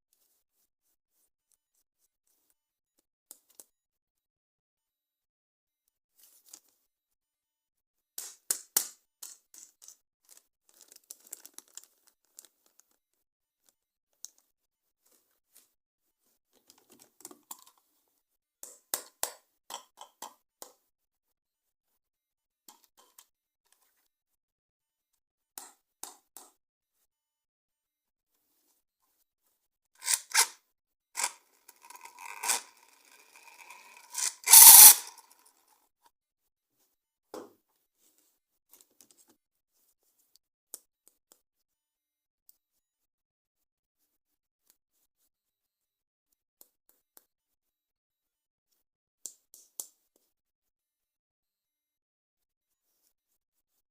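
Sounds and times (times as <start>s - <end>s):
packaging crinkling and rustling: 10.3s - 12.9s
packaging tearing: 30.0s - 30.5s, 31.2s - 35.2s.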